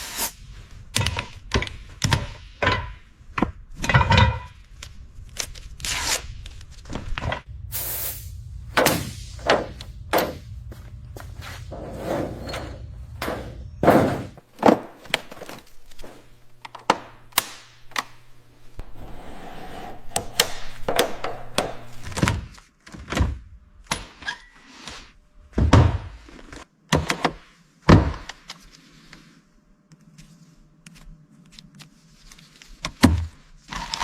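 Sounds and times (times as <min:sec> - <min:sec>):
low hum: 0:07.4 - 0:14.5
heavy thuds: 0:07.5 - 0:17.3
thunks and knocks: 0:08.8 - 0:15.6.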